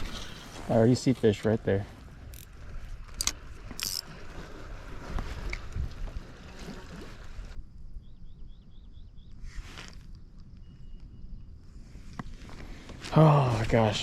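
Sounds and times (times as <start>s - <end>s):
water sloshing and trickling: 0.0s - 7.6s.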